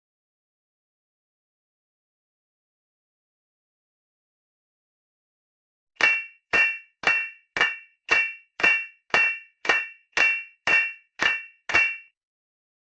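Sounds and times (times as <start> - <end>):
hammer clanging on sword blade: 6.0 - 12.1.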